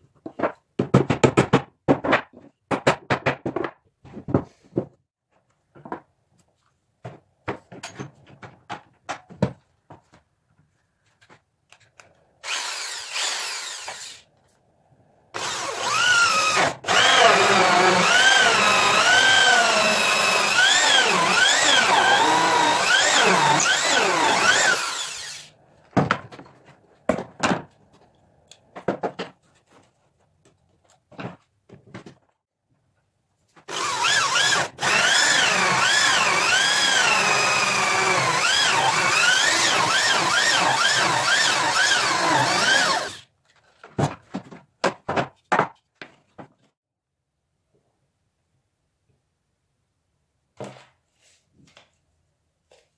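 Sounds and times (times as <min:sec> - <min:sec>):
power tool motor on wood: 0:12.4 - 0:14.2, 0:15.4 - 0:25.5, 0:33.7 - 0:43.2.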